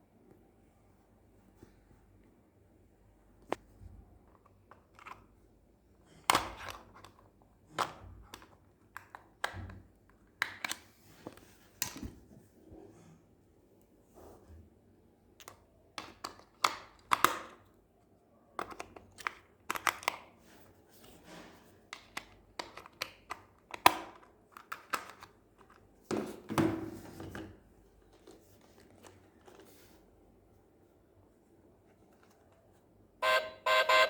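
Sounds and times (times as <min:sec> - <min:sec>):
toy packaging clicks and taps: 0:06.3 - 0:10.8, 0:15.4 - 0:17.7, 0:18.6 - 0:20.3, 0:22.0 - 0:25.8.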